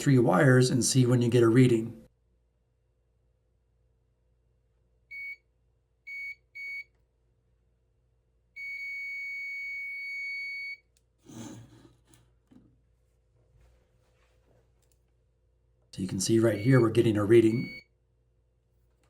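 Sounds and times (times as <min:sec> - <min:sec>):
multimeter beeps: 0:05.1 - 0:05.5, 0:06.1 - 0:06.9, 0:08.6 - 0:10.9, 0:16.4 - 0:17.9.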